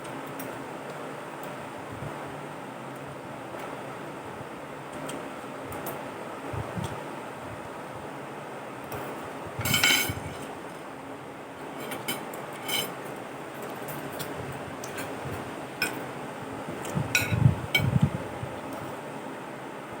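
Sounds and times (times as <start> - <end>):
cutlery clinking on a plate: 9.6 - 10.2, 11.8 - 13.0.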